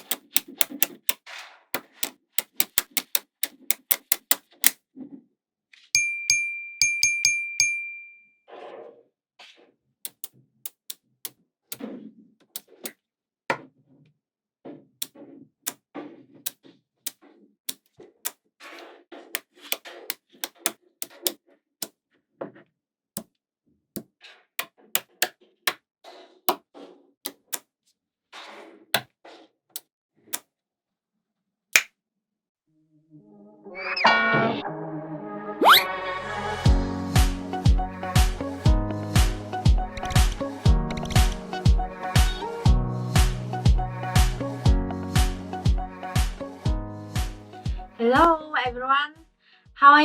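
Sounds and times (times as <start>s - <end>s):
magnetic balls clicking together: 0.0s - 1.2s, 1.8s - 4.8s, 10.1s - 11.0s, 20.4s - 21.4s, 39.8s - 41.4s.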